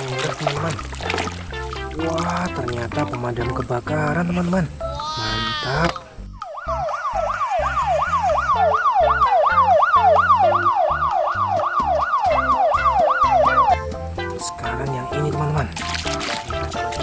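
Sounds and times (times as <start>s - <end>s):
toy fire truck siren wailing: 6.5s - 13.6s.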